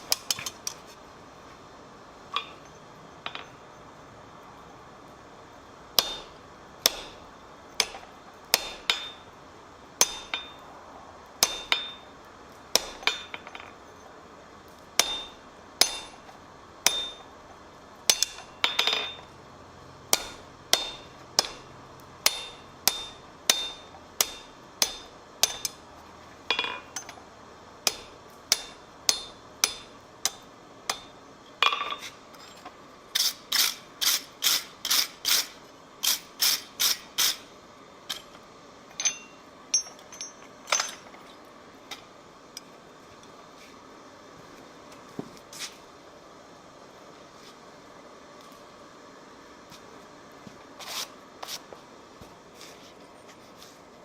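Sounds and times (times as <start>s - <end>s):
hammer striking steel on anvil: 6.0s - 7.2s, 7.8s - 9.3s, 10.0s - 10.6s, 11.4s - 12.1s, 12.7s - 13.6s, 15.0s - 17.3s, 18.1s - 19.3s, 20.1s - 25.8s, 26.5s - 27.2s, 27.8s - 32.1s, 38.9s - 41.0s.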